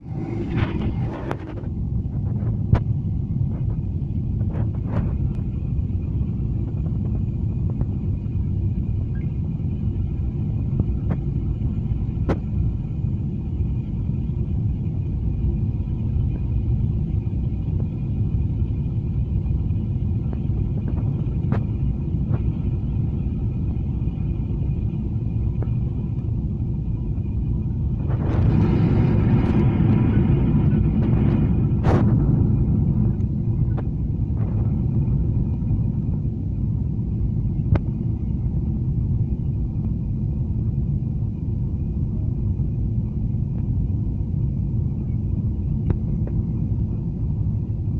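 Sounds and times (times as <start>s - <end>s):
broad air rush: 0.0s - 2.9s
airliner engines and airflow rumble: 0.0s - 47.9s.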